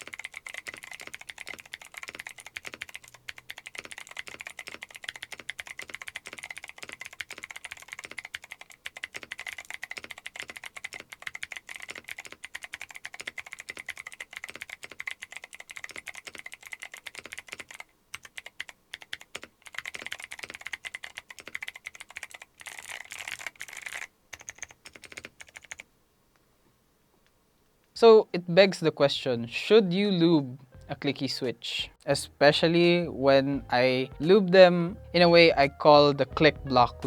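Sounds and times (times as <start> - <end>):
fast typing on clicky keyboard: 0.0 - 25.9.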